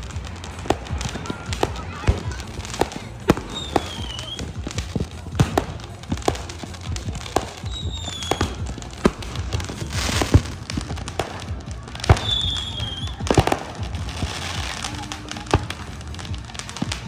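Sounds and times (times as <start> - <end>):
falling firework whistle: 0.0 - 4.8, 7.4 - 10.6, 11.2 - 16.2
fireworks bangs and pops: 0.0 - 17.0.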